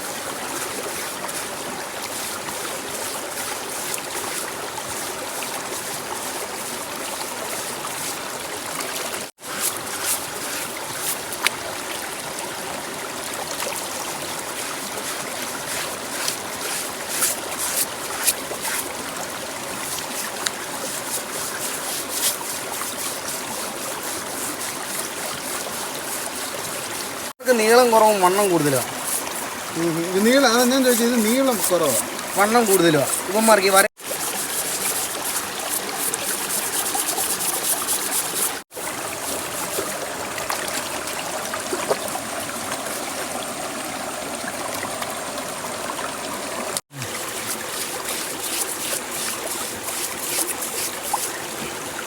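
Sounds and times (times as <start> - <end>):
water running and trickling: 0.0 - 52.0
short scrapes and clicks: 34.0 - 38.6, 47.0 - 51.8.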